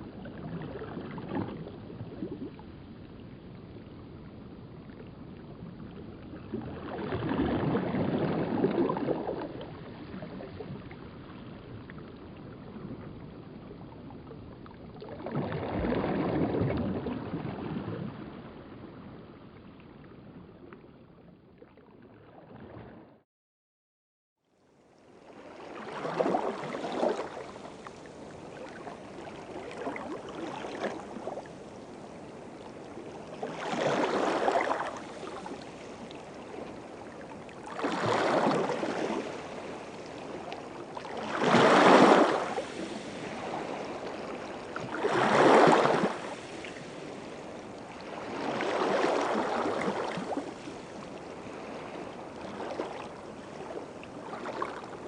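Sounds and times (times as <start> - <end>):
small waves washing on shore: 6.4 - 11.8, 25.0 - 55.0.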